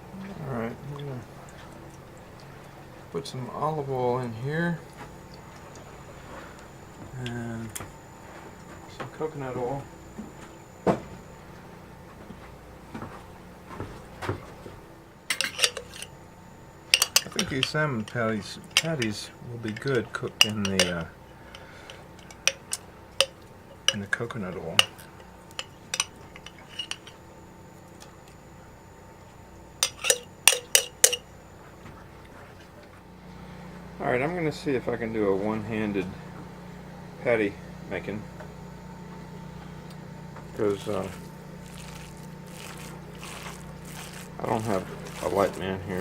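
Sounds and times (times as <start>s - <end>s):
metal spoon clinking on cookware: 15.3s - 16.1s, 16.9s - 21.6s, 22.2s - 27.2s, 29.8s - 31.3s
spoon clinking against pan: 16.9s - 17.7s, 29.8s - 31.3s.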